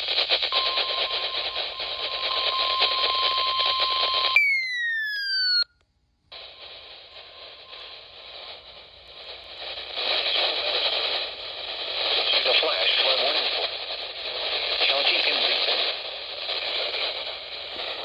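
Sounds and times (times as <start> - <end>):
radio static hiss: 0.0 - 4.4, 6.4 - 18.0
falling electronic tone: 4.4 - 5.7.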